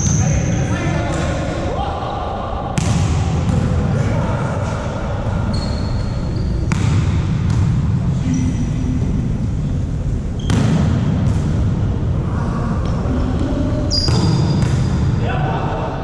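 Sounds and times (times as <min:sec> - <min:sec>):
shoe squeaks: 0:00.0 - 0:00.5, 0:05.5 - 0:06.7, 0:13.9 - 0:14.9
low din of a hall: 0:00.0 - 0:16.0.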